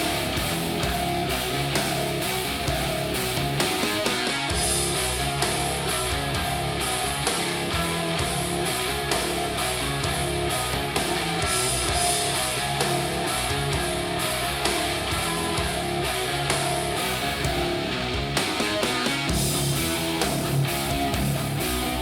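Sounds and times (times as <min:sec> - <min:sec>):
instrumental rock music: 0:00.0 - 0:22.0.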